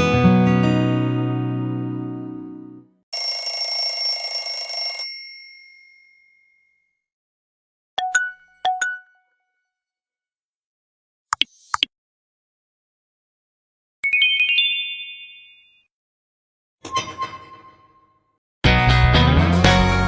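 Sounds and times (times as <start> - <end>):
bell-like ringing tone: 4.8 - 6.9.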